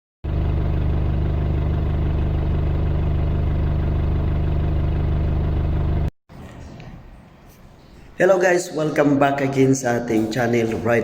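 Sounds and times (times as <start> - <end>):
engine idling: 0.2 - 6.1.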